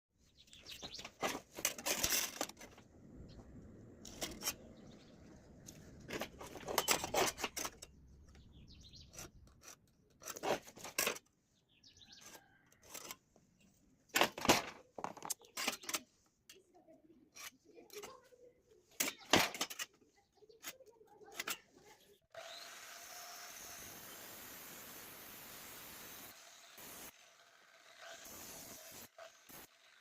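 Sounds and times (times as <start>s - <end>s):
metallic clinks and scrapes: 0.9s - 2.8s, 4.0s - 4.9s, 6.0s - 11.3s, 15.0s - 22.1s.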